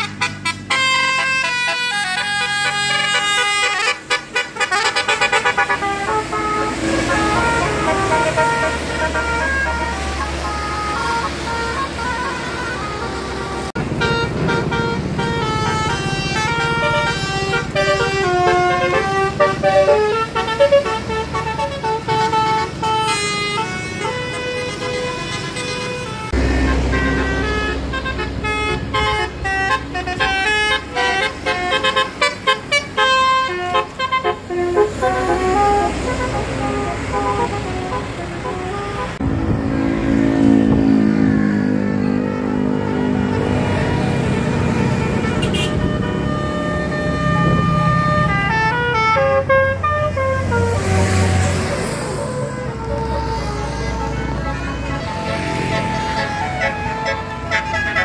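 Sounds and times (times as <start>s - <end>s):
melodic bus horn: 0.0s - 58.0s
low held horn tone: 0.9s - 39.4s.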